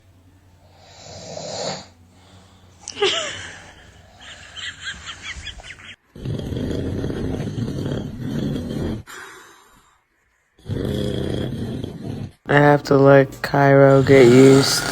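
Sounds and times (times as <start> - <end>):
loud snoring: 0.6 - 2.6, 6.2 - 9.8, 10.6 - 12.8, 13.5 - 14.9.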